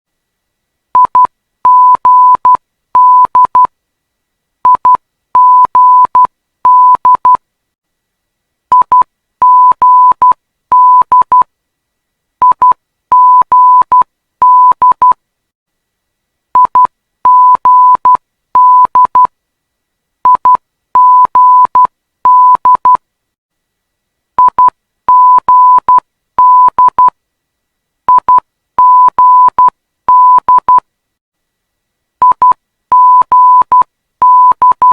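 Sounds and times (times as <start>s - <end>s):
morse code tone: 16.6s - 19.3s, 20.3s - 23.0s, 24.4s - 27.1s, 28.1s - 30.8s, 32.2s - 34.9s.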